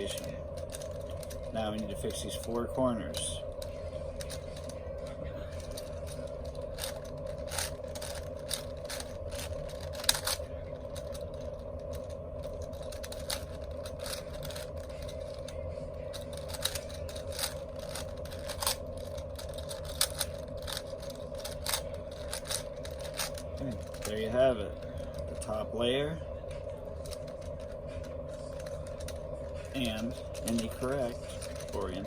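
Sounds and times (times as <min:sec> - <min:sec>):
steady background hum: 0:00.0 - 0:32.0
plastic puzzle cube clicking: 0:06.8 - 0:10.4, 0:16.1 - 0:24.1.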